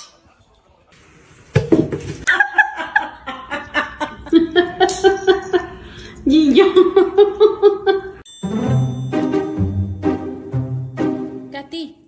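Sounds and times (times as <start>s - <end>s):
person laughing: 2.3s - 8.2s.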